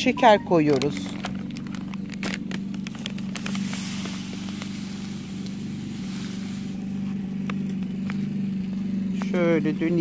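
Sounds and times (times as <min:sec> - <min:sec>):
low motor hum: 0:00.0 - 0:10.0
soft hiss: 0:03.4 - 0:07.4.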